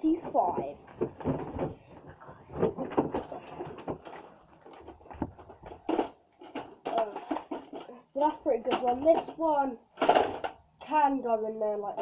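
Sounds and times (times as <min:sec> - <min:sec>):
plastic magazines knocking and clicking: 0:00.3 - 0:08.0, 0:10.0 - 0:10.6.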